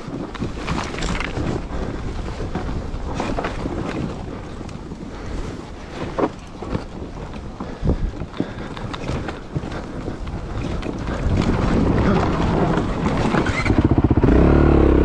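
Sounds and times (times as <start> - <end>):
wind buffeting microphone: 0.0 - 15.0
dirt bike engine running: 9.0 - 15.0.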